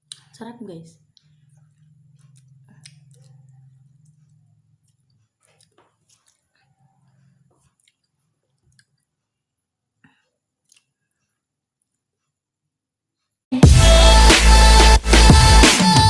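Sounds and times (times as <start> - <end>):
wet chewing and mouth clicks: 1.1 - 9.2, 10.6 - 11.2.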